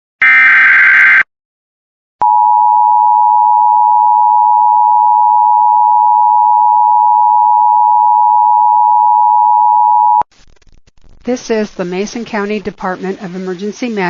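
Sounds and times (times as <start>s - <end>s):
screeching digital data burst: 0.2s - 1.2s.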